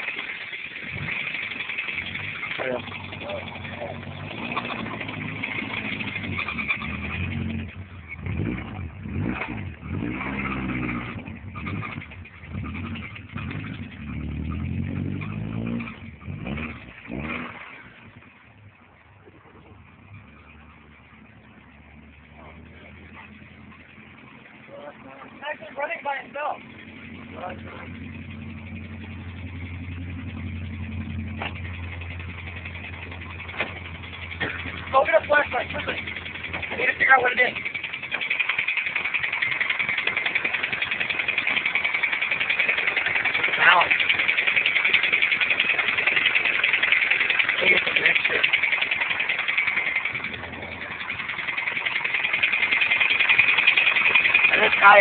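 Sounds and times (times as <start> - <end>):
rhythmic engine knock: 0.0 - 17.1, 22.2 - 55.0
car engine revving: 0.0 - 55.0.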